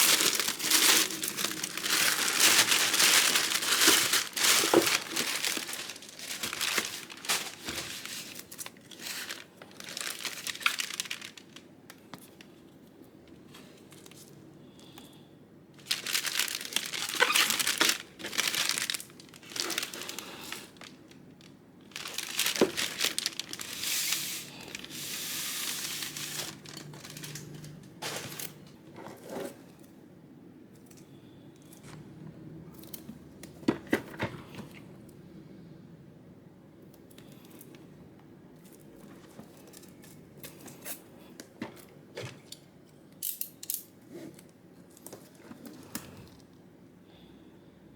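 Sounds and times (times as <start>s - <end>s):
packaging crinkling and tearing: 0.0s - 12.5s, 15.8s - 29.5s.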